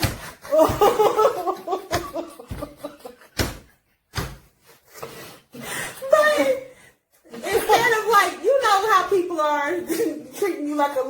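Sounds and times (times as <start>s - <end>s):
women laughing: 0.4s - 3.4s.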